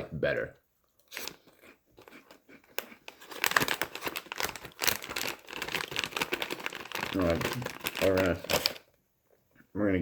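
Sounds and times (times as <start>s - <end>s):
plastic packaging crinkling: 1.1s - 9.0s.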